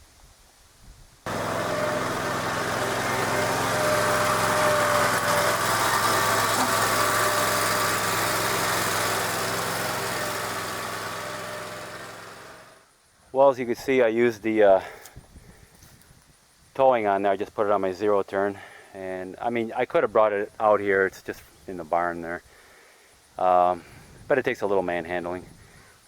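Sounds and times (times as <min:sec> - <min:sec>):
mower engine running: 0:01.3 - 0:12.9.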